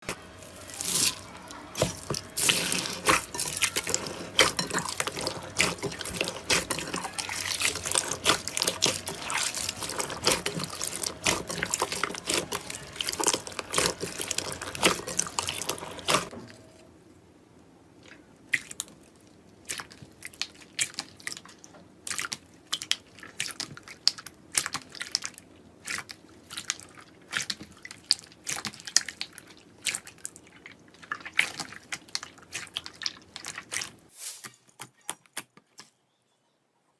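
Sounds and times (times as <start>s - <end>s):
hands squishing slime: 0.4s - 16.3s.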